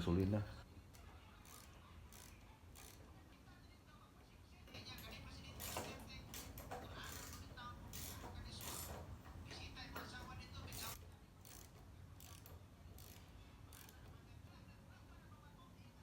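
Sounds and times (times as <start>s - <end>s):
metal tools clicking and rattling: 4.8s - 14.1s.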